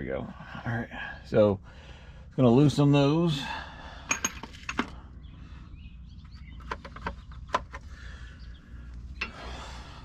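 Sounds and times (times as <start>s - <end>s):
faint bird chirps: 5.0s - 10.0s.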